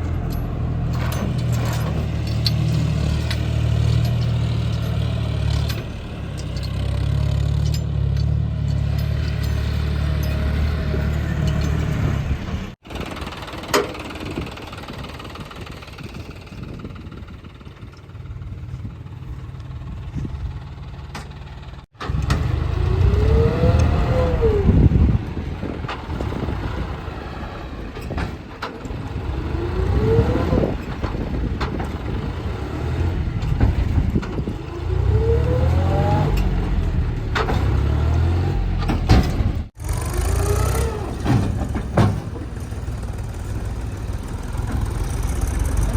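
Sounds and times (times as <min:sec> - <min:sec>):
diesel engine revving: 0:00.0 - 0:45.9
hydraulic whine: 0:33.1 - 0:45.9.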